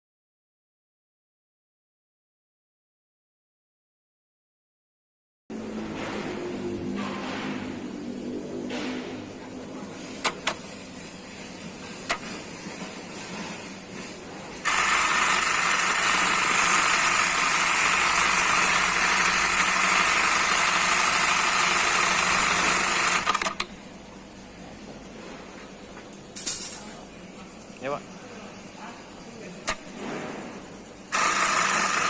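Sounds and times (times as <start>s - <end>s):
sewing machine stitching: 14.6s - 23.6s, 31.1s - 32.0s.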